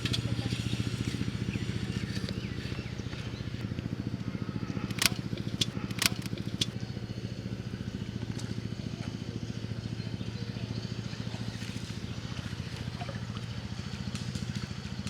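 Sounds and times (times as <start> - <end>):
small engine chugging: 0.0 - 15.0
sharp clicks: 4.8 - 6.8.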